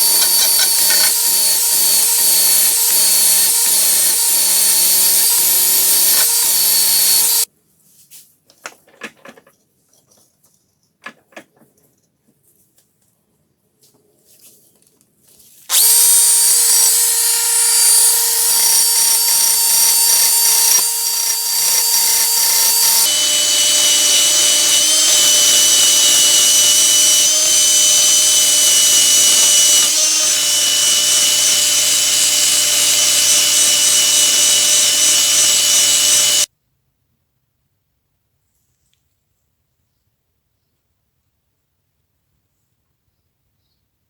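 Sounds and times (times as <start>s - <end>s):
power tool whining: 0.0s - 7.5s, 15.7s - 36.5s.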